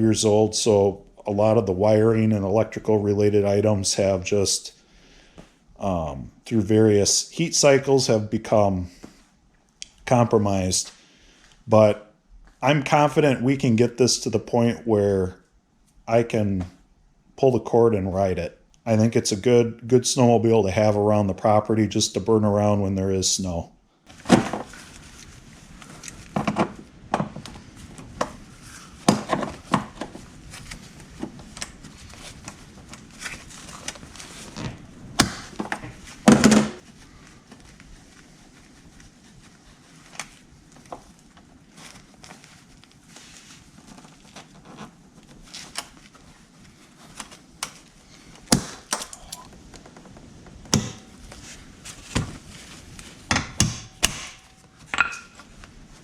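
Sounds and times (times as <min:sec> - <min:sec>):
hand tools knocking and clicking: 0:48.9 - 0:49.5.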